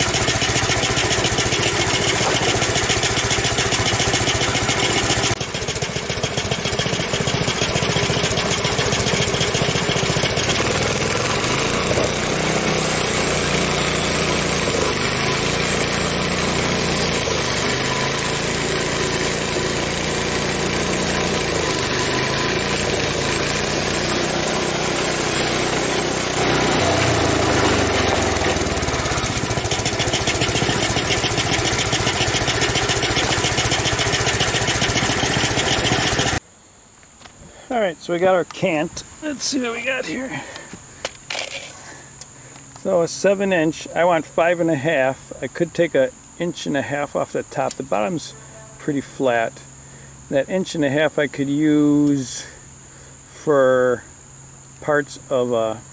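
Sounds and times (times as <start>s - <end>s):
sawmill gas engine running: 0.0s - 36.4s, 39.2s - 45.0s.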